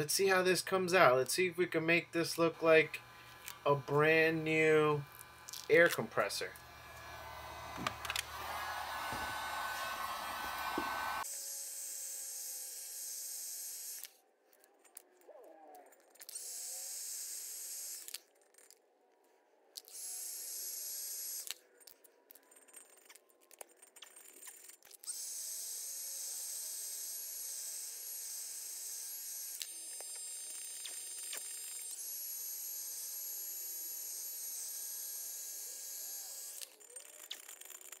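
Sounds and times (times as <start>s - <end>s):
heat gun blowing hiss: 1.9s - 11.2s.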